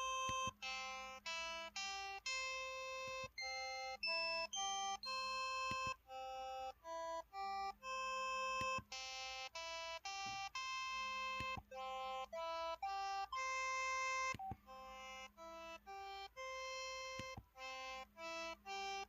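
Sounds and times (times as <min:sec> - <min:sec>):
phone button beeps: 0:00.0 - 0:02.0, 0:03.0 - 0:06.0, 0:07.8 - 0:12.3.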